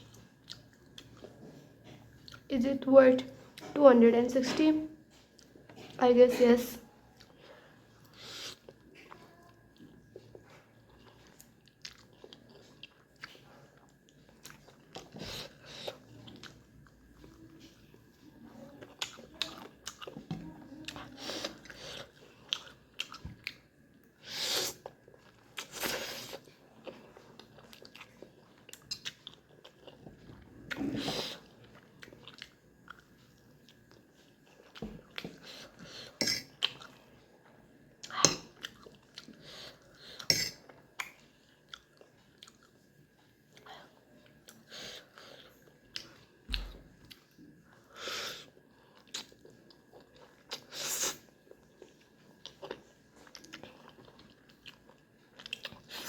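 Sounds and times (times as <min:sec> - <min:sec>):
chewing and biting food: 0:08.6 - 0:17.5, 0:38.0 - 0:39.4, 0:51.4 - 0:56.0
food crunching: 0:48.9 - 0:56.0.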